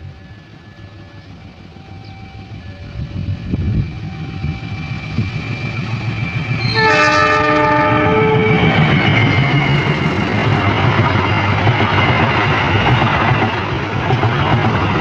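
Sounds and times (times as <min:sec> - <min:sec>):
diesel locomotive engine rumbling: 0:00.0 - 0:15.0
train horn chord: 0:06.6 - 0:08.7.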